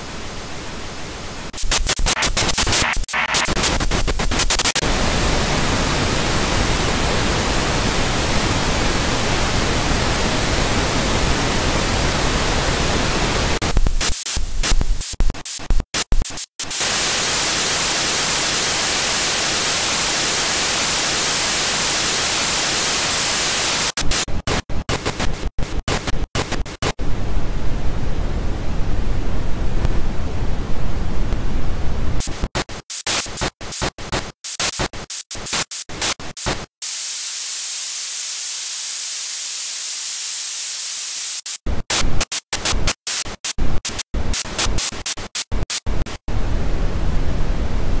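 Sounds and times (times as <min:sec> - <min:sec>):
stuttering white noise: 0:00.0 - 0:48.0
thin high hiss: 0:32.2 - 0:41.6.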